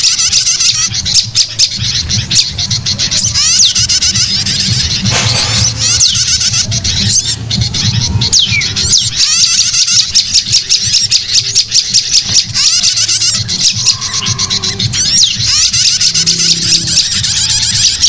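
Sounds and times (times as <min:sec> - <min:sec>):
downward-sweeping bird whistles: 0:00.0 - 0:18.0
songbirds chattering: 0:00.0 - 0:18.0
low hum: 0:04.2 - 0:08.9.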